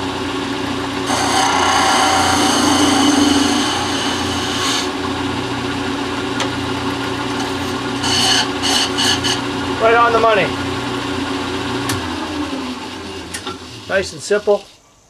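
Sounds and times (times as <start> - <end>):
lathe motor humming: 0.1 - 14.0
tool scraping spinning wood: 0.8 - 5.8, 7.2 - 9.5.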